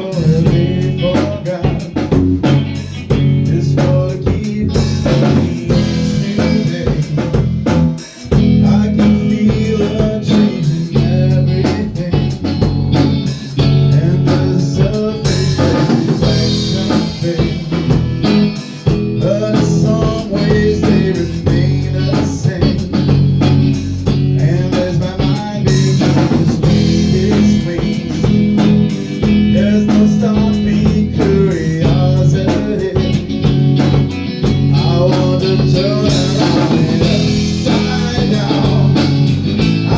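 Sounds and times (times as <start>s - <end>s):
bluesy rock band playing: 0.0s - 39.9s.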